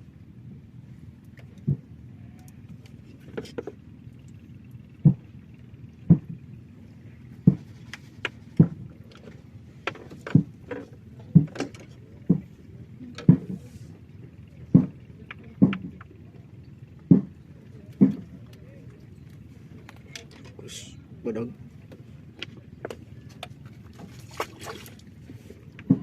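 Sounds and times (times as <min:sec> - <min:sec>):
steady low hum: 0:00.0 - 0:26.0
hollow knocks: 0:05.0 - 0:05.3, 0:06.1 - 0:06.4, 0:07.4 - 0:07.7, 0:08.6 - 0:08.8, 0:14.7 - 0:15.0, 0:17.1 - 0:17.4.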